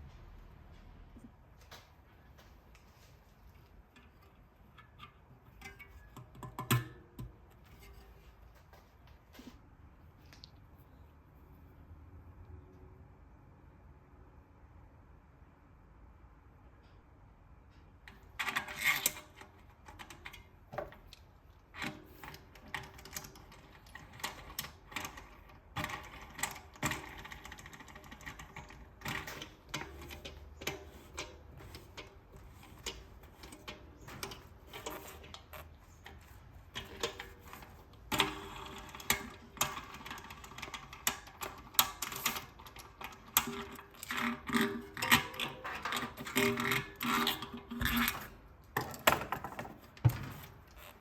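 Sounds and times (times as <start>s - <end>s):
metallic clicks of tools and hub parts: 3.9s - 8.1s, 16.8s - 50.1s.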